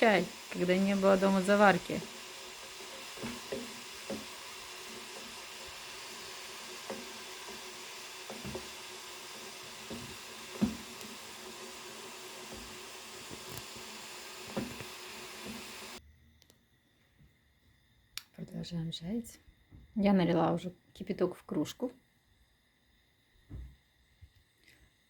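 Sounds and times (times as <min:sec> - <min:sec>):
sugar sizzling in a metal spoon: 0:00.0 - 0:16.0.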